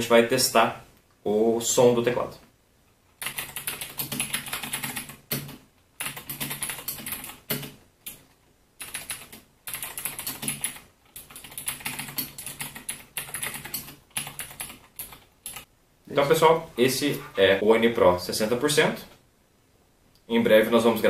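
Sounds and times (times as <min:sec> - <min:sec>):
mechanical keyboard typing: 0:03.2 - 0:08.2, 0:08.8 - 0:15.7.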